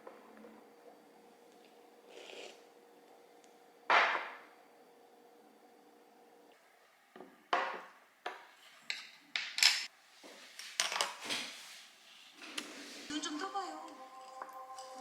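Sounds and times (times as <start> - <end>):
objects knocking and clattering: 7.2 - 9.9.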